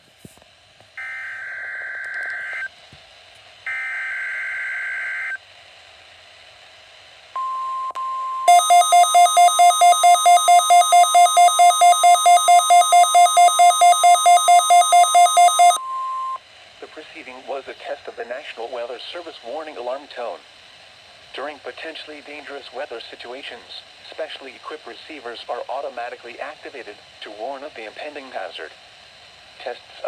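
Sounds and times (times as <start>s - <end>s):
harsh electronic beeping: 7.4s - 16.4s
steady alarm tone: 7.4s - 16.4s
buzzy digital data tones: 8.5s - 15.8s.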